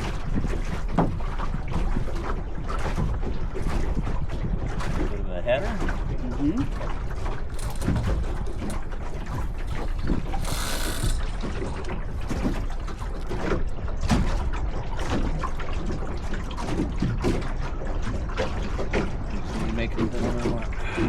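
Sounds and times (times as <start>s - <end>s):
wind rumble on microphone: 0.0s - 21.0s
sailboat hardware clicking: 7.5s - 11.7s.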